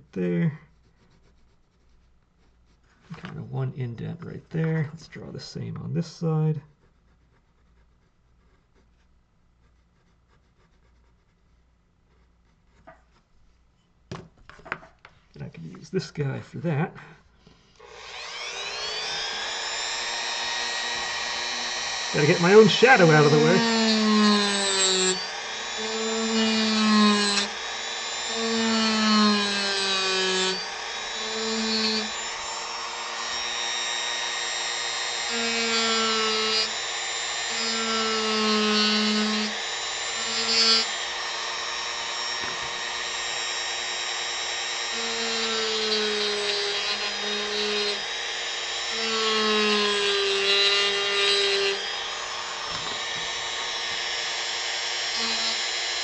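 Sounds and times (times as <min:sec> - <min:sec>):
rotary tool carving wood: 0:17.4 - 0:56.0.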